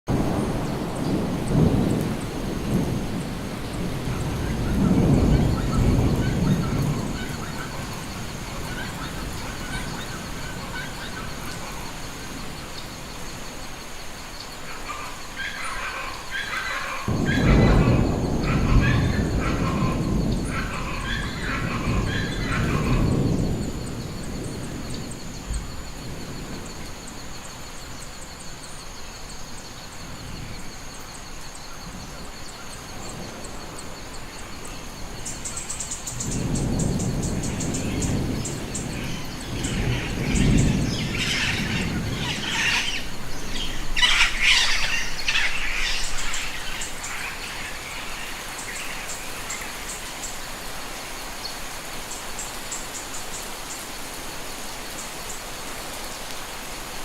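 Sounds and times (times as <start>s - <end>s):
distant thunder rumbling: 0.1s - 53.1s
birds chirping and calling: 3.7s - 13.0s, 14.4s - 25.7s, 34.6s - 50.6s.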